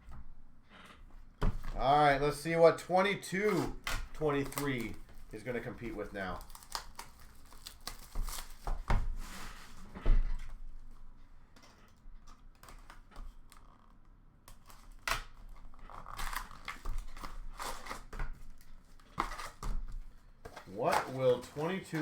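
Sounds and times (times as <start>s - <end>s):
wrapper crinkling and tearing: 3.5s - 8.7s, 14.5s - 19.7s, 20.6s - 22.0s.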